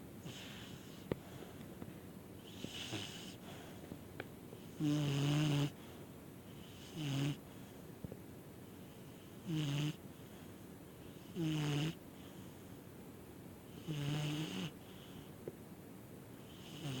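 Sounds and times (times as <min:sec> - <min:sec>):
dog snoring: 0:00.2 - 0:01.1, 0:02.4 - 0:03.7, 0:04.6 - 0:05.9, 0:06.5 - 0:07.6, 0:08.8 - 0:10.0, 0:11.0 - 0:12.4, 0:13.7 - 0:15.3, 0:16.4 - 0:17.0.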